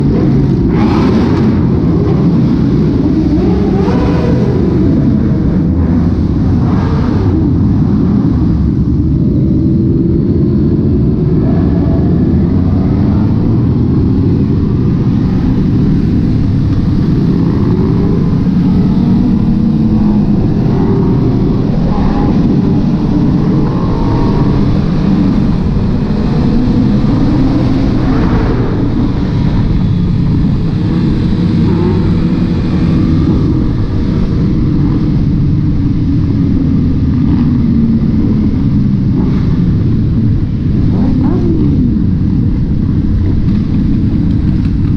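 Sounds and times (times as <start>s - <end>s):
motorcycle engines revving: 0.0s - 44.9s.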